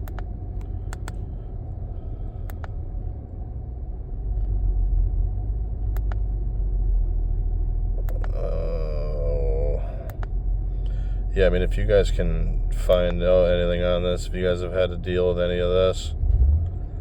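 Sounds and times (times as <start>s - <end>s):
car engine idling roughly: 8.0s - 16.1s.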